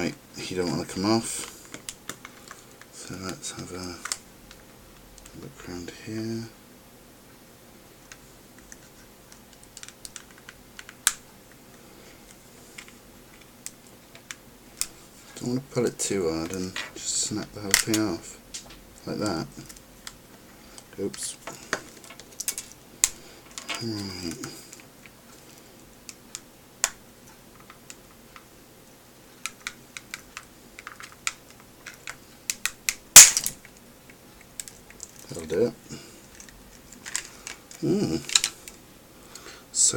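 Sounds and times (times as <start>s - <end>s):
plastic parts clicking: 4.0s - 4.6s, 8.1s - 11.2s, 17.7s - 18.0s, 20.8s - 23.8s, 29.4s - 33.8s, 34.4s - 35.3s, 36.2s - 38.8s.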